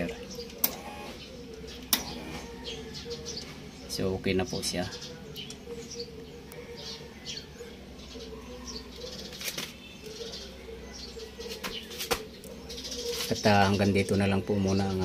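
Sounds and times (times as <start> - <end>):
small birds chirping: 0.0 - 15.0
sharp clicks: 0.4 - 2.3.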